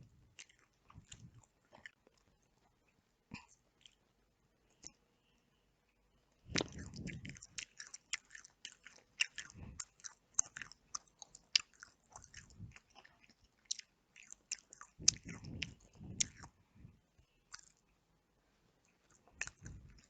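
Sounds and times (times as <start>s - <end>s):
close chewing mouth clicks: 0.4s - 2.3s, 6.5s - 16.6s, 17.5s - 17.8s, 18.9s - 20.0s.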